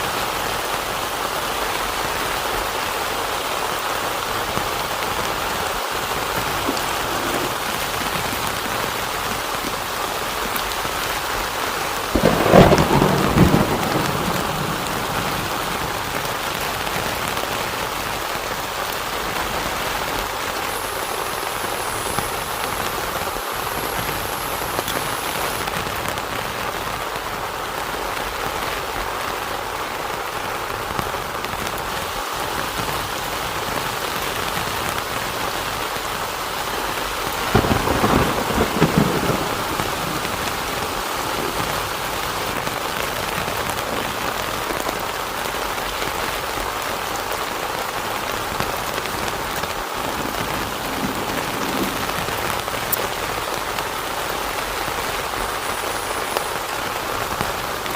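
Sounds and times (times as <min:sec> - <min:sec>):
heavy rain on a tent: 0:00.0 - 0:57.9
thunder crack and rumble: 0:06.0 - 0:20.3, 0:32.7 - 0:47.1, 0:48.2 - 0:54.0.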